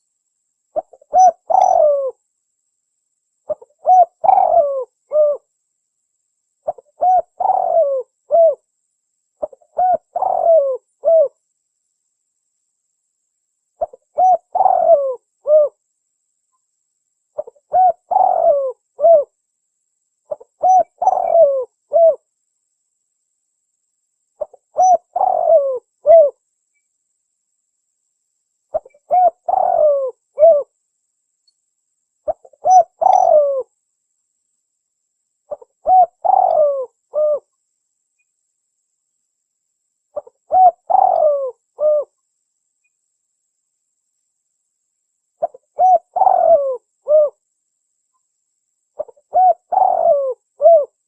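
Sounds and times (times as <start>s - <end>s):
dove cooing: 0.8s - 2.2s, 3.5s - 5.5s, 6.6s - 8.6s, 9.4s - 11.4s, 13.8s - 15.8s, 17.4s - 19.3s, 20.3s - 22.2s, 24.4s - 26.4s, 28.7s - 30.7s, 32.3s - 33.7s, 35.5s - 37.5s, 40.2s - 42.2s, 45.4s - 47.4s, 49.0s - 51.0s.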